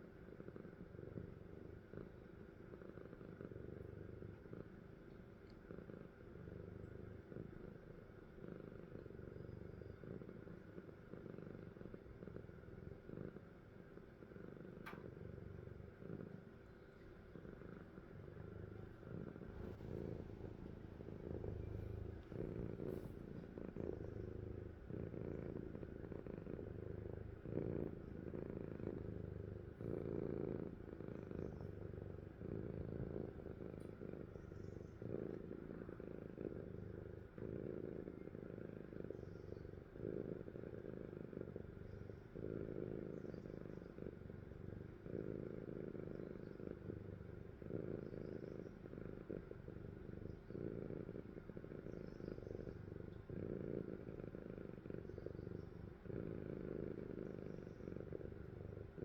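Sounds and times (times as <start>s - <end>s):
cat purring: 0.0s - 59.0s.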